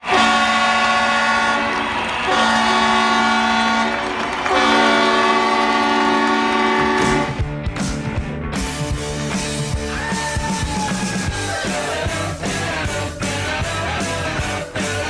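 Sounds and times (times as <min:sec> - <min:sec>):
deep air horn blasts: 0:00.0 - 0:07.4.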